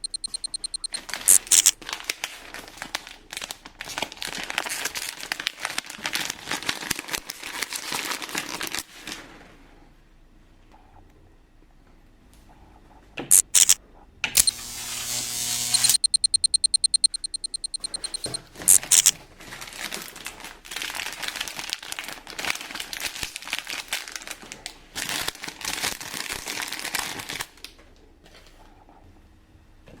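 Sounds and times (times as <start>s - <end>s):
fast run of clicks: 0.0s - 1.8s, 13.3s - 13.8s, 15.7s - 19.1s
packaging crinkling and rustling: 1.0s - 9.3s, 18.8s - 27.8s.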